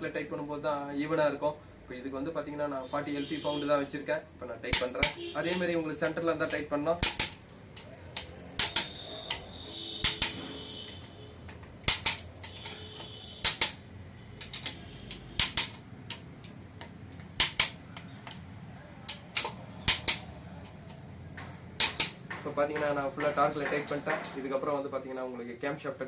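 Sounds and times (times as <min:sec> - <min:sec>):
torque wrench double clicks: 0:07.0 - 0:09.4, 0:10.0 - 0:10.4, 0:11.8 - 0:12.7, 0:14.4 - 0:16.6, 0:17.4 - 0:18.4, 0:19.1 - 0:20.3.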